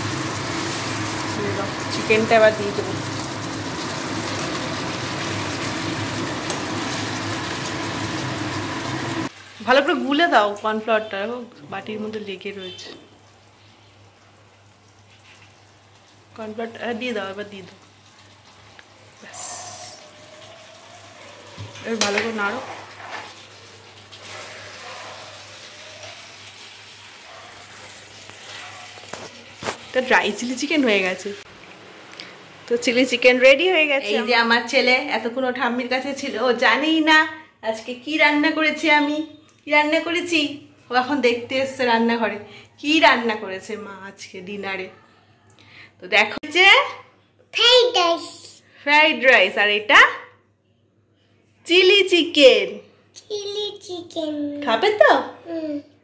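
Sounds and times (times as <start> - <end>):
chicken sizzling in a pan: 0.0 - 10.1, 13.2 - 31.5.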